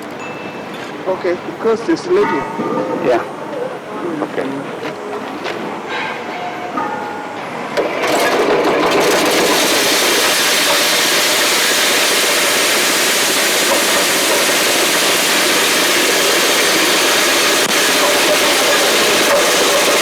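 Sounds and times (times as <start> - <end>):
milling machine grinding: 7.8 - 20.0.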